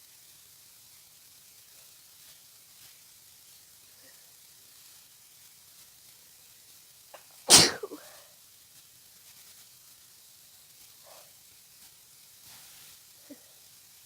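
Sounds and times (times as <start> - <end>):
person sneezing: 7.2 - 8.2.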